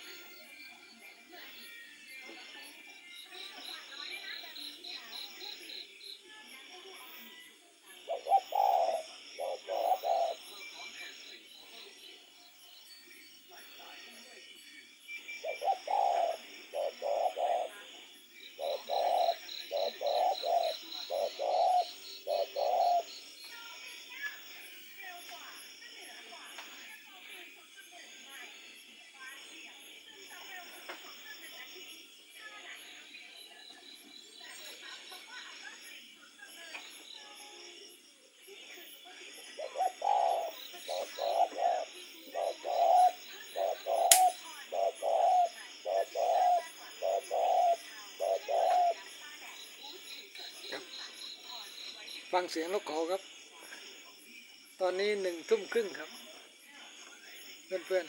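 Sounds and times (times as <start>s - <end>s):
dove cooing: 8.0s - 11.2s, 15.4s - 23.2s, 39.6s - 49.1s
sharp click: 44.1s - 44.4s.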